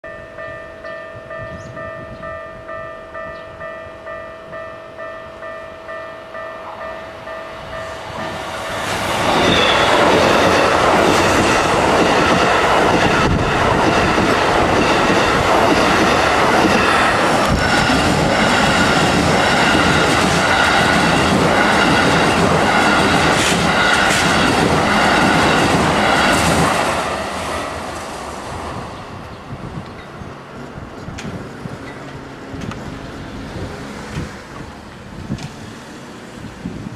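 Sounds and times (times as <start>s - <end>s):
level-crossing bell ringing: 0.0s - 8.8s
electric trains passing: 0.1s - 36.9s
train wheel clatter: 7.7s - 28.2s.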